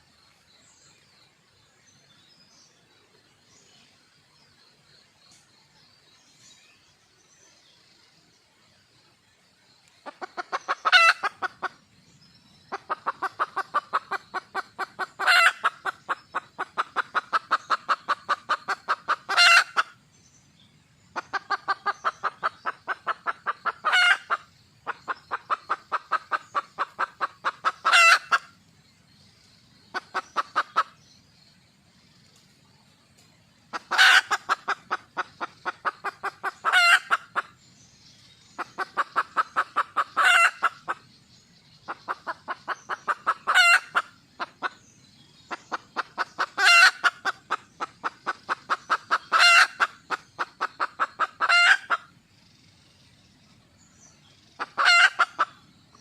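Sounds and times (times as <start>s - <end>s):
hen clucking rapidly: 10.0s - 11.8s, 12.7s - 20.0s, 21.2s - 28.6s, 29.9s - 31.0s, 33.7s - 37.6s, 38.6s - 41.1s, 41.9s - 44.8s, 45.4s - 52.2s, 54.4s - 56.0s.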